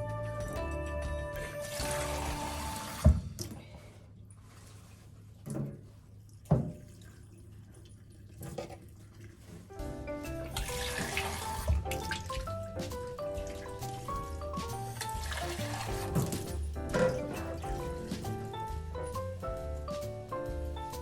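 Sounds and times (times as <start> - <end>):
background music: 0.0 - 3.2, 9.7 - 21.0
tap running into sink: 10.5 - 18.3
knocks of items in sink: 15.9 - 18.3.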